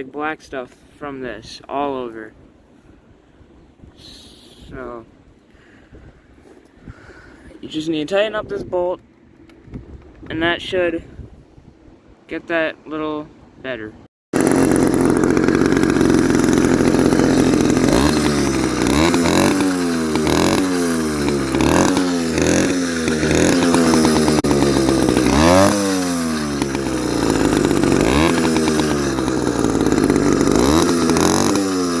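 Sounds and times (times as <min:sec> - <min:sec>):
two-stroke engine revving: 0:14.3 - 0:32.0.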